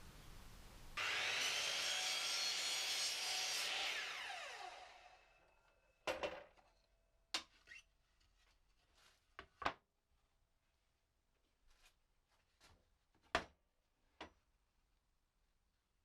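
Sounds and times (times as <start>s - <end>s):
power saw cutting wood: 1.0s - 5.7s.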